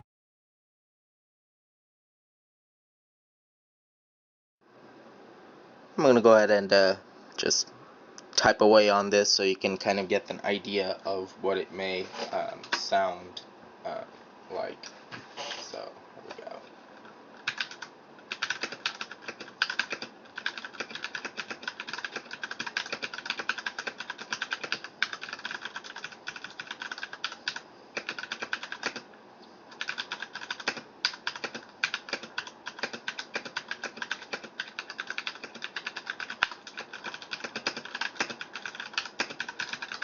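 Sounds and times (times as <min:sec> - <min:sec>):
mechanical keyboard typing: 0:17.4 - 0:29.0, 0:29.7 - 0:40.0.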